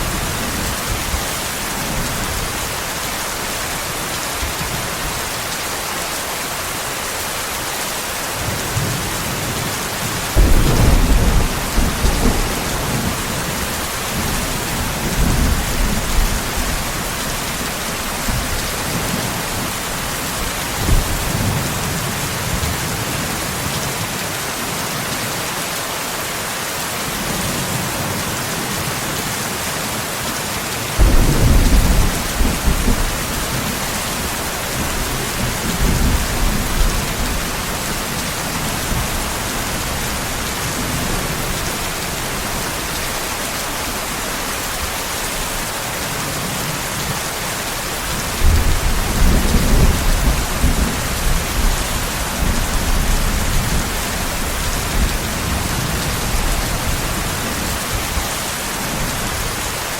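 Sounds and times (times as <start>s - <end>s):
steady rain: 0.0s - 59.9s
thunder rumbling: 8.5s - 22.0s, 31.0s - 43.0s.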